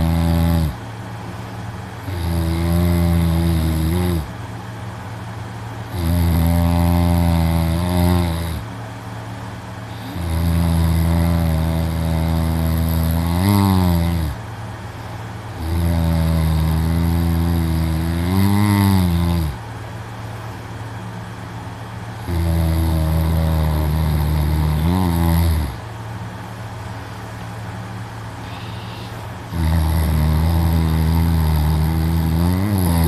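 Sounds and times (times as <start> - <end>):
man snoring loudly: 0.0 - 0.8, 2.0 - 4.3, 5.9 - 8.7, 9.9 - 14.4, 15.5 - 19.6, 22.2 - 25.8, 28.4 - 33.0
quiet breathing: 28.3 - 29.5.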